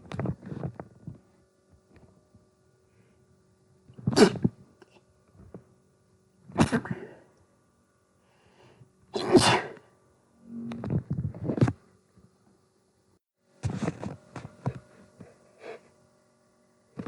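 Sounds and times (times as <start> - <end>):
person sneezing: 9.2 - 9.8.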